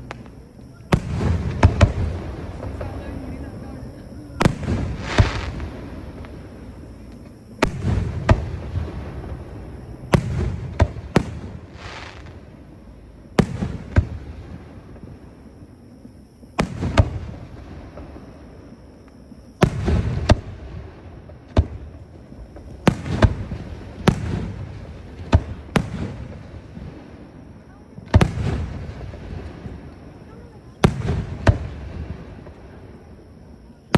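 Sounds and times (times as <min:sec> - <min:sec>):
fireworks booming: 0:00.0 - 0:33.9.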